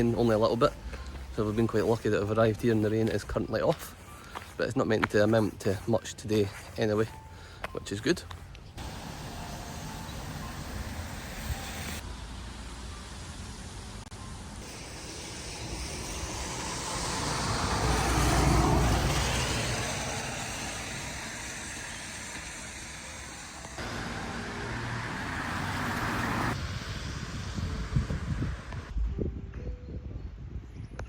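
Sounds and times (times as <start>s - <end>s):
steady traffic noise: 0.0s - 29.0s
car passing: 8.8s - 28.9s.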